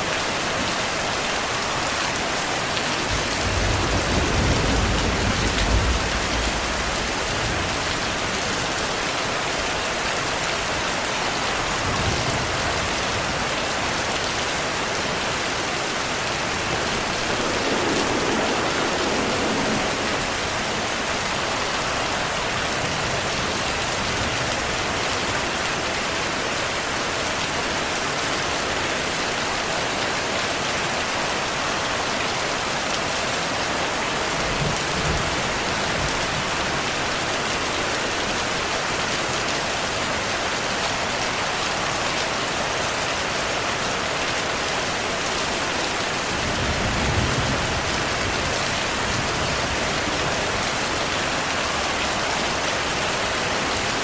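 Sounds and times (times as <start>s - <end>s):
heavy rain falling: 0.0s - 54.0s
distant thunder rumbles: 3.0s - 8.7s, 11.7s - 24.6s.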